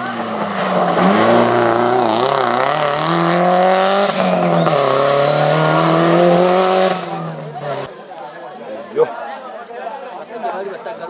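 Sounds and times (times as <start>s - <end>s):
car engine revving high: 0.0s - 7.9s.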